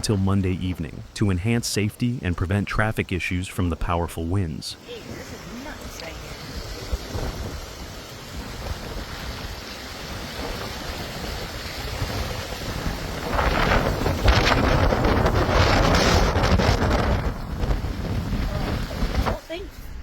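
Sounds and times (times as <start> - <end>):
rushing wind and water: 0.0 - 20.0
wind buffeting microphone: 4.8 - 20.0.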